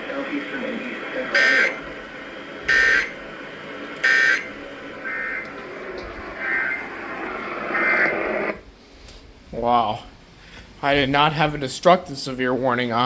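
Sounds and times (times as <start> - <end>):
two-tone digital data buzzes: 1.4 - 1.9, 2.7 - 3.2, 4.0 - 5.4.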